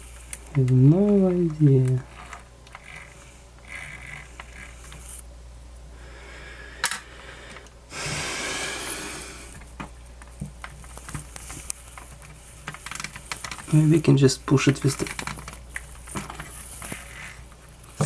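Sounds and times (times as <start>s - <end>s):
breathy rush of air: 6.0s - 9.6s.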